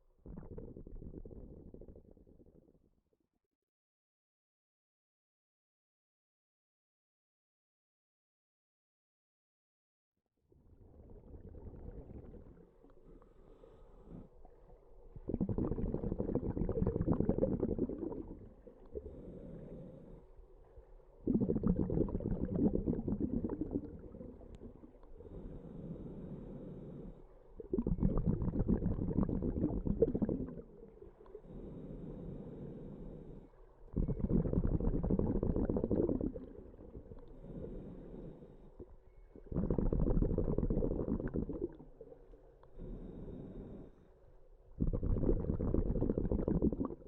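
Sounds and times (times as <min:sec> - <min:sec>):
bubbling underwater exhalations: 0:00.3 - 0:02.6, 0:11.0 - 0:12.9, 0:15.2 - 0:20.2, 0:21.2 - 0:26.9, 0:27.6 - 0:31.8, 0:33.9 - 0:42.3, 0:44.7 - 0:47.0
quiet breathing: 0:10.7 - 0:47.0.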